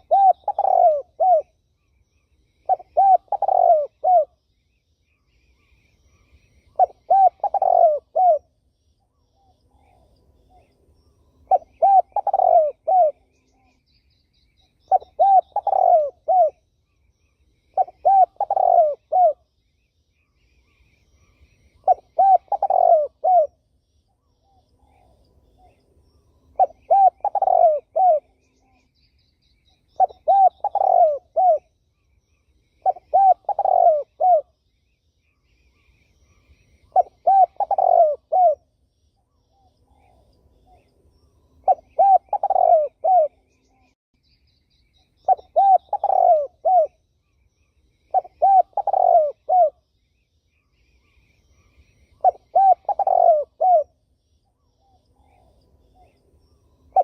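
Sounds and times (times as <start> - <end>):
dove cooing: 0.0 - 1.5, 2.6 - 4.4, 6.7 - 8.5, 11.4 - 13.7, 14.9 - 16.6, 17.7 - 19.4, 21.8 - 23.6, 26.6 - 28.7, 30.0 - 31.7, 32.8 - 34.5, 36.8 - 38.6, 41.6 - 43.6, 45.2 - 47.0, 48.1 - 49.8, 51.6 - 53.9
small birds chirping: 0.0 - 57.0.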